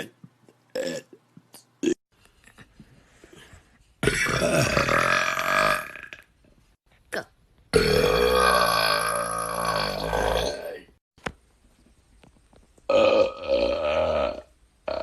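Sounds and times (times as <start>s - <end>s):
person burping: 0.0s - 1.2s, 1.8s - 2.0s, 4.0s - 6.4s, 7.1s - 10.9s, 12.9s - 15.0s.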